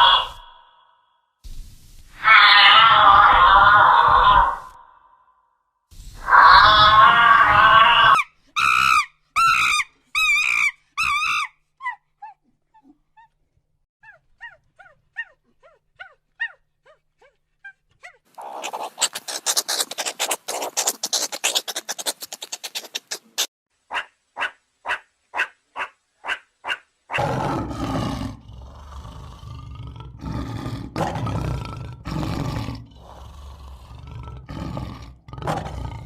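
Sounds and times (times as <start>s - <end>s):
loud long animal call: 0.0s - 1.1s, 2.2s - 5.2s, 6.2s - 8.8s
fast chattering: 18.4s - 23.5s
short wavering calls: 18.4s - 26.8s.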